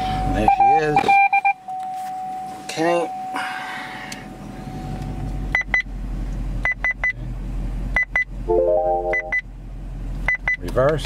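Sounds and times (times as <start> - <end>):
car engine idling: 3.1 - 11.0
multi-note electronic tone: 8.5 - 9.4
short high electronic beeps: 8.5 - 9.4.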